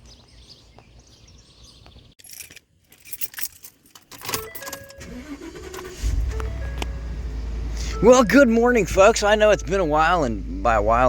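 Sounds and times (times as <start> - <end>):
keys jangling: 2.2 - 5.0.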